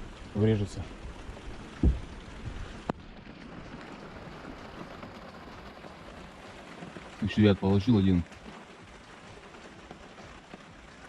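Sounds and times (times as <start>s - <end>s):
light rain hissing: 0.0s - 11.0s
dull thump: 1.8s - 2.6s.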